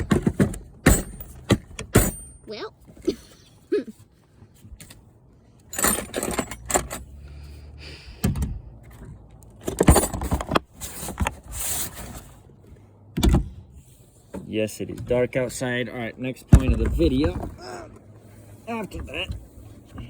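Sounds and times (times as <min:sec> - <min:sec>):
metal hand tools clattering: 0:05.7 - 0:07.1.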